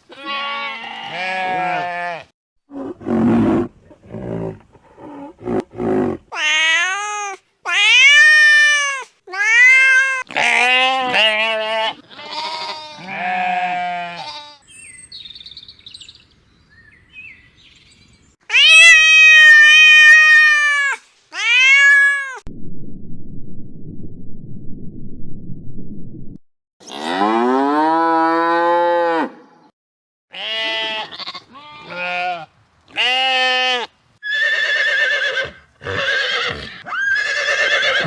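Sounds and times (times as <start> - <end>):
goats bleating: 0.0 - 2.3, 10.3 - 14.6, 30.3 - 33.9
low steady rumble: 22.5 - 26.4.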